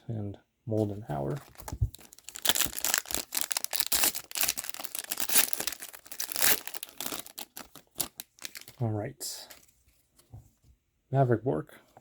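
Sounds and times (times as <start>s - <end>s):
plastic wrapper tearing and crinkling: 1.1s - 8.8s.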